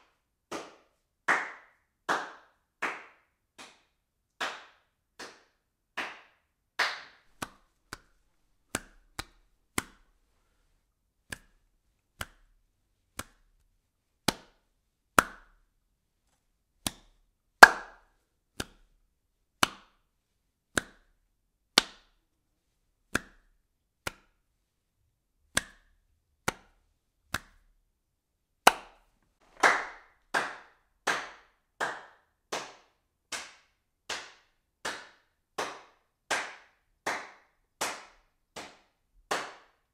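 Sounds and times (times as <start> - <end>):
hand claps: 0.0 - 10.1, 11.3 - 11.6, 12.2 - 12.5, 13.2 - 13.4, 14.2 - 14.6, 15.2 - 15.6, 16.8 - 18.8, 19.6 - 20.0, 20.7 - 21.1, 21.8 - 22.1, 23.2 - 23.5, 24.1 - 24.4, 25.5 - 27.6, 28.6 - 39.9.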